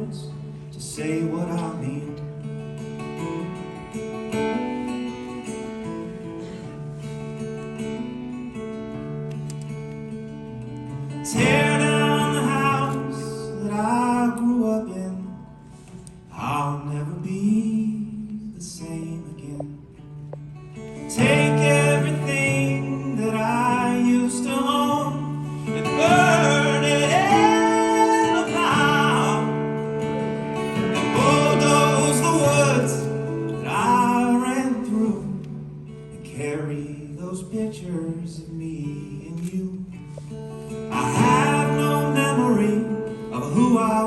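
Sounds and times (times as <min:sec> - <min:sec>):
man singing: 0:00.0 - 0:02.5, 0:11.1 - 0:15.6, 0:16.3 - 0:20.0, 0:21.0 - 0:44.0
acoustic guitar: 0:00.0 - 0:44.0.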